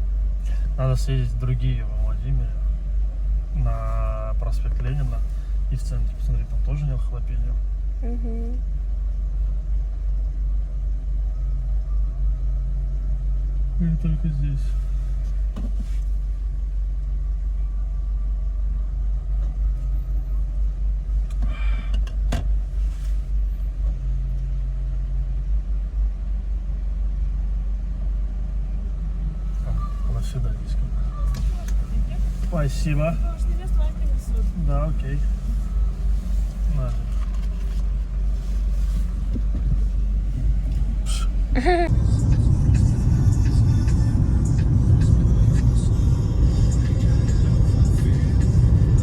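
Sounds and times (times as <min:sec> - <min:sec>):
car cabin rumble: 0:00.0 - 0:49.0.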